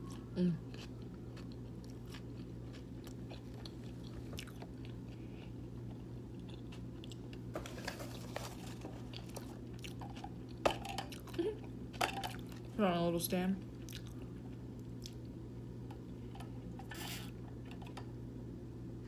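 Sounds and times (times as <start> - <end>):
chewing pizza: 0.0 - 12.8, 13.6 - 15.4
steady low hum: 0.0 - 19.0.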